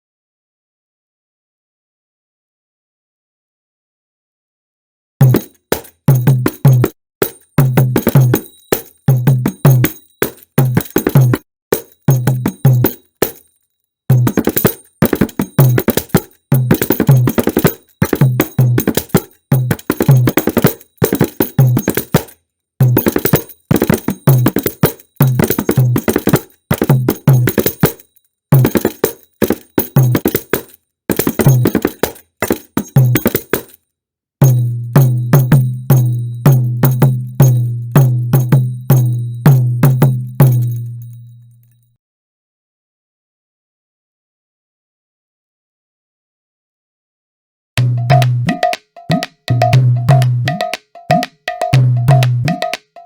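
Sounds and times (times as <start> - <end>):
drum patterns with bass strokes: 5.2 - 6.9, 7.6 - 8.4, 14.1 - 20.6, 34.4 - 41.2, 47.8 - 53.0.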